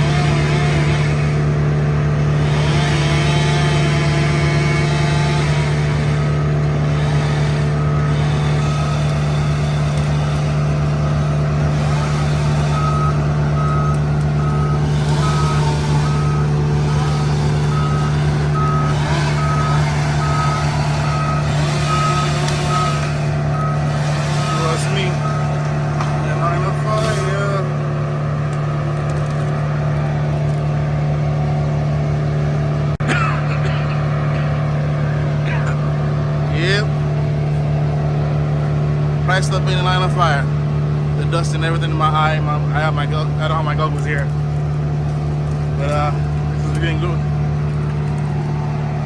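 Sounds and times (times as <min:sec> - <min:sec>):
heavy vehicle engine running: 0:00.0 - 0:49.0
reversing alarm beeps: 0:06.2 - 0:25.8.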